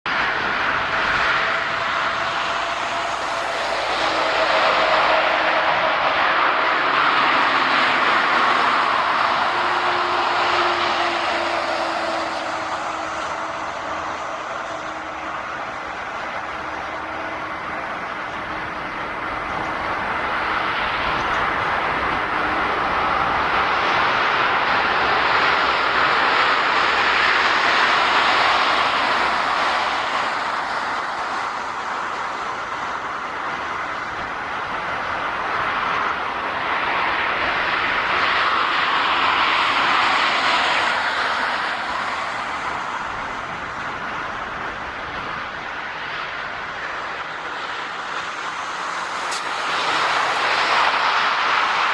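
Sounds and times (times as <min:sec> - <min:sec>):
jet engines of landing airliner: 0:00.1 - 0:51.9.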